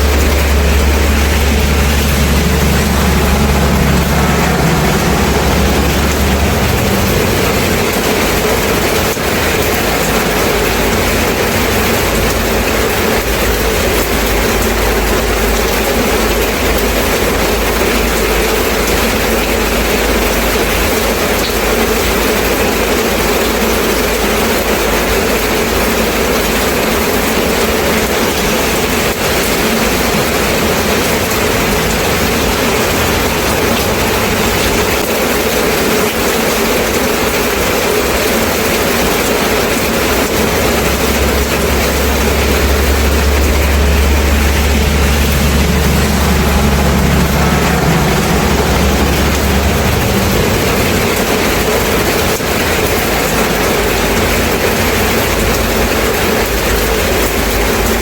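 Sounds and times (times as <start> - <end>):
steady rain hissing: 0.0 - 58.0.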